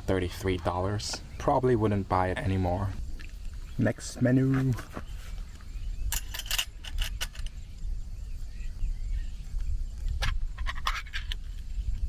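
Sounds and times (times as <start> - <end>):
light clicks and metallic clinks: 6.0 - 7.7.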